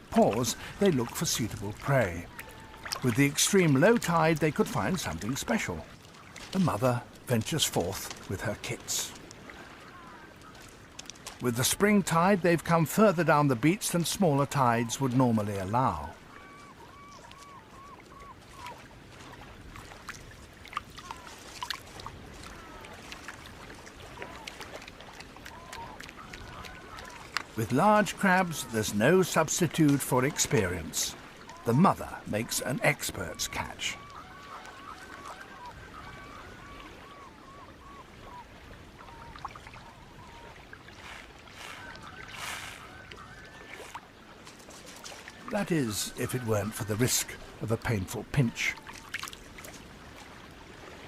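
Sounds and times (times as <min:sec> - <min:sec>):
small splashes: 0:00.0 - 0:11.9, 0:14.8 - 0:51.0
seawater sloshing among rocks: 0:00.0 - 0:51.0
short animal calls: 0:33.5 - 0:44.0.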